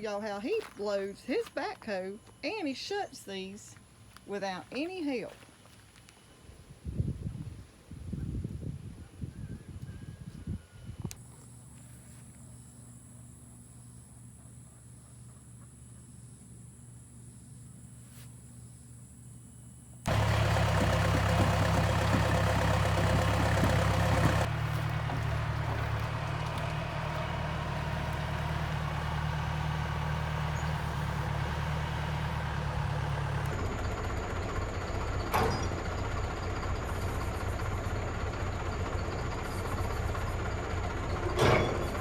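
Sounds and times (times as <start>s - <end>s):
diesel engine running: 20.1s - 42.0s.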